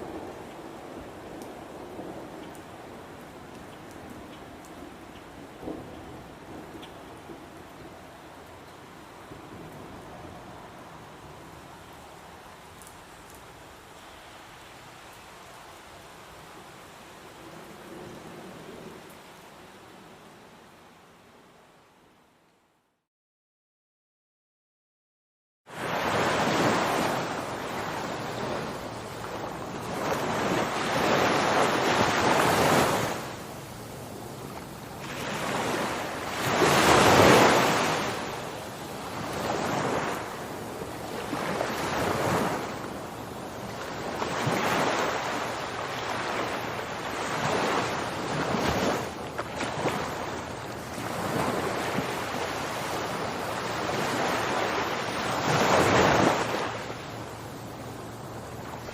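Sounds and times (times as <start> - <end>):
rushing water: 25.7 - 58.9.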